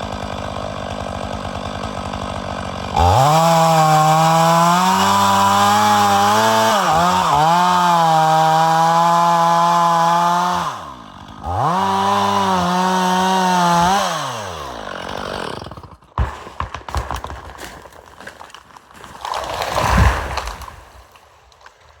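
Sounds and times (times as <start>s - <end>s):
chainsaw cutting: 0.0s - 22.0s
wood cracking and snapping: 0.0s - 22.0s
tree crashing to ground: 0.2s - 10.4s, 14.8s - 22.0s.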